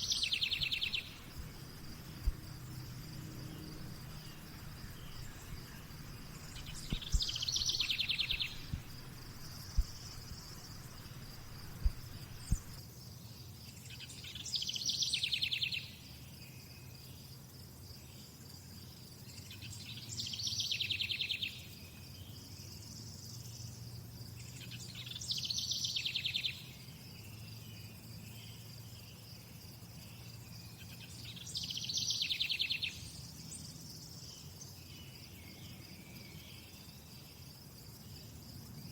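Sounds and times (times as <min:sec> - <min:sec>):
crickets trilling: 0:00.0 - 0:12.8, 0:23.2 - 0:38.9
rapidly pulsed insect call: 0:00.0 - 0:13.2, 0:13.8 - 0:38.9.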